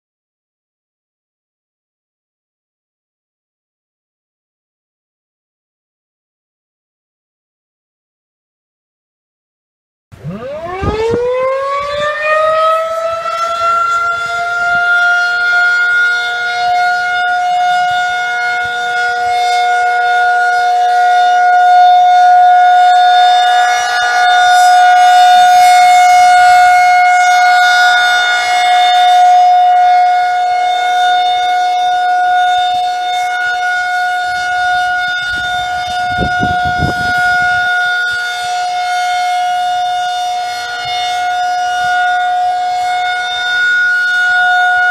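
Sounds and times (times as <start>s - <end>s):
tornado warning siren wailing: 10.1s - 44.9s.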